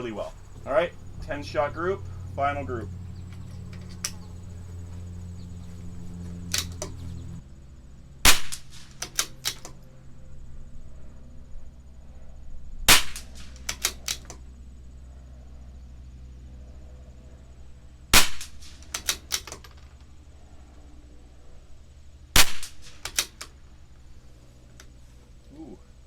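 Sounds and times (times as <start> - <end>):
rifle bolt metallic clicks: 3.3 - 4.2, 6.5 - 7.0, 8.3 - 9.8, 13.0 - 14.4, 18.2 - 20.1, 22.4 - 23.6
rifle shots: 6.5 - 7.0, 8.2 - 9.8, 12.9 - 14.4, 18.1 - 19.7, 22.3 - 23.6.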